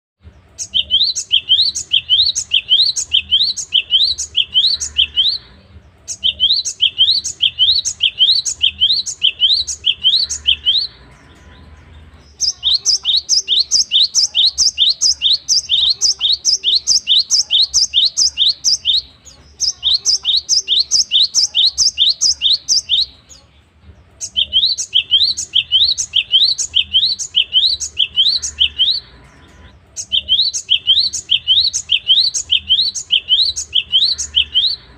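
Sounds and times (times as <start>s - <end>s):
bird singing repeated notes: 0.2s - 34.9s.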